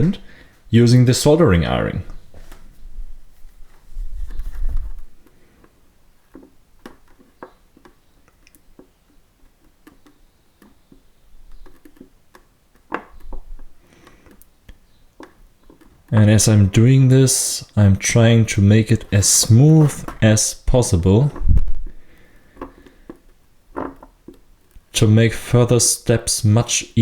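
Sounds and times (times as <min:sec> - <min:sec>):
dull bumps of helmet handled: 0:02.1 - 0:16.1, 0:21.3 - 0:24.6.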